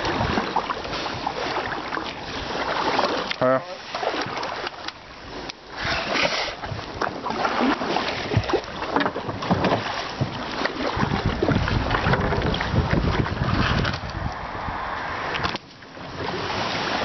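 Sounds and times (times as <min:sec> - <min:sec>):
paddle splashing in water: 0:00.0 - 0:17.0
wind buffeting microphone: 0:08.0 - 0:17.0.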